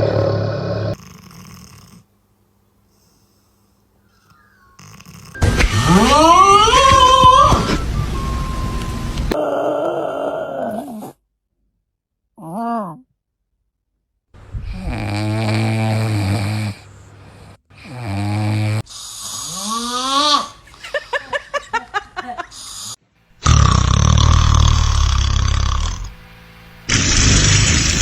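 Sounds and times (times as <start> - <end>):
dogs snoring: 0.0 - 2.1, 2.9 - 8.3, 14.5 - 20.6, 22.5 - 26.2, 26.8 - 28.0
dog whining: 4.2 - 9.7.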